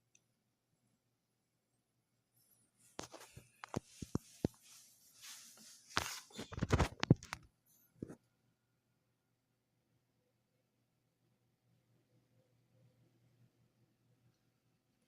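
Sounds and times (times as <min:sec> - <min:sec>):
rustling: 0:02.8 - 0:07.3.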